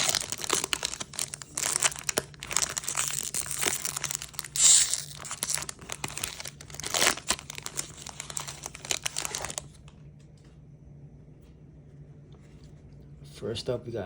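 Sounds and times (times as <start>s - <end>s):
plastic wrapper tearing and crinkling: 0.0s - 9.8s.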